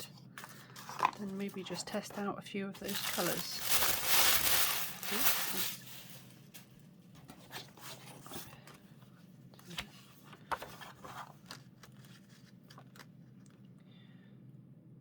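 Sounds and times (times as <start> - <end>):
paper rustling: 0.4 - 8.7, 9.6 - 13.1.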